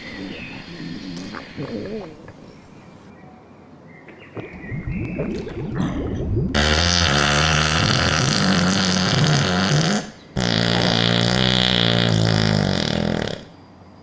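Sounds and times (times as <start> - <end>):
long loud burps: 6.6 - 13.5.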